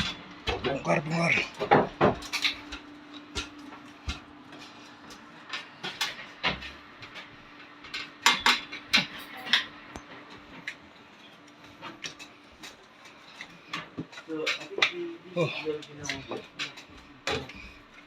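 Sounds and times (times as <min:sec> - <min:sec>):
steady hum: 0:00.0 - 0:18.0.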